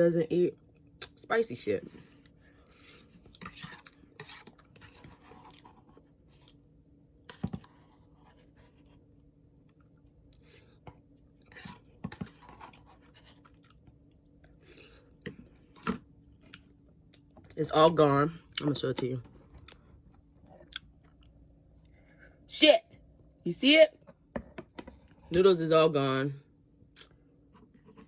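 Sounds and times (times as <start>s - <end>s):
person chewing noodles: 2.2s - 17.6s, 19.5s - 22.1s.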